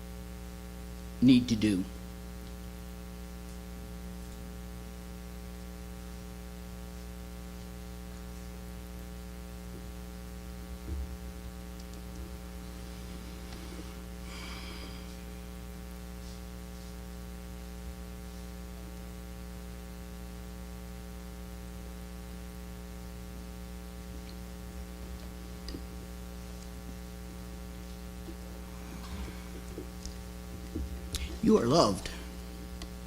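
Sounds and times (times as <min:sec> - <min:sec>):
electrical mains hum: 0:00.0 - 0:33.0
faint rustle: 0:11.9 - 0:17.1, 0:24.2 - 0:31.5.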